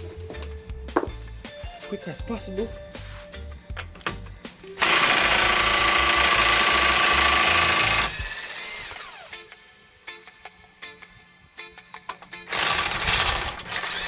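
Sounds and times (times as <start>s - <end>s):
power tool motor whining: 4.8s - 9.4s, 12.5s - 14.0s.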